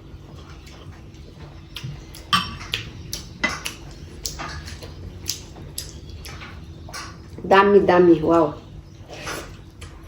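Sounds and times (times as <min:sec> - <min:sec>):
cutlery clinking on a plate: 0:02.3 - 0:02.8.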